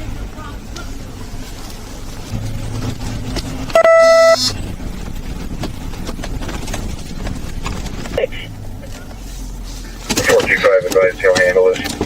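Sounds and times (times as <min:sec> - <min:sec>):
low vehicle rumble: 0:00.0 - 0:12.0
loud single-pitched beep: 0:03.8 - 0:04.6.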